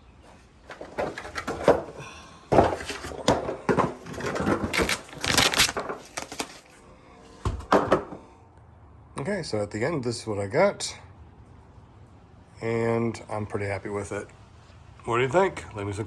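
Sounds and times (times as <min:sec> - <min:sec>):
shelf parts knocking and clattering: 0:00.2 - 0:06.6, 0:07.4 - 0:08.3.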